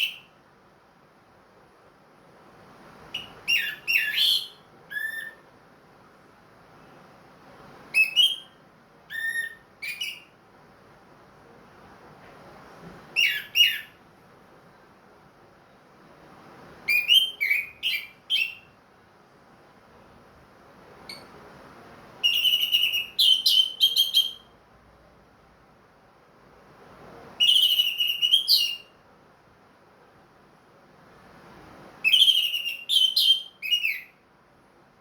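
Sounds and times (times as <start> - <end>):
thrush singing whistled notes: 22.2 - 24.5, 27.4 - 28.9, 32.0 - 34.2.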